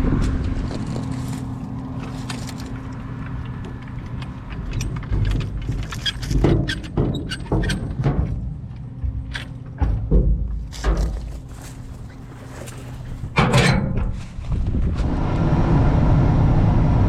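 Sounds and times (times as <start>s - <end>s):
metallic clicks and rattles: 2.0s - 11.4s.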